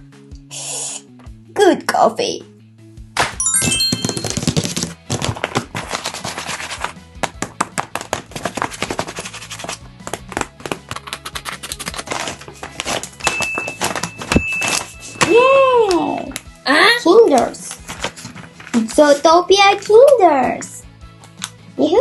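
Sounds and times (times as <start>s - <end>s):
background music: 0.0s - 22.0s
paper rustling and clicking: 4.2s - 16.5s, 17.3s - 20.2s.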